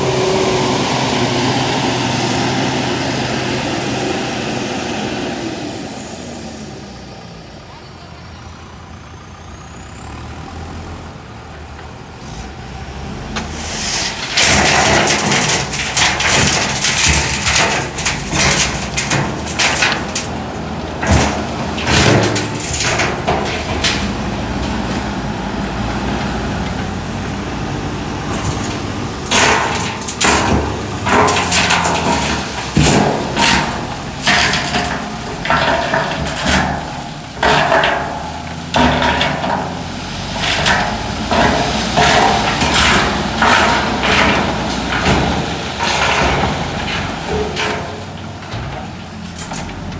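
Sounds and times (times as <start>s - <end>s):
diesel engine running: 0.0s - 49.9s
gravel scraping and crunching: 12.2s - 49.9s.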